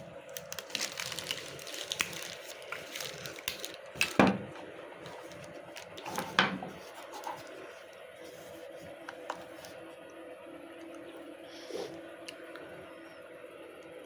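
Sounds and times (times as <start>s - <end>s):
faint steady hum: 0.0s - 14.0s
plastic clicks and rustles: 0.3s - 8.0s.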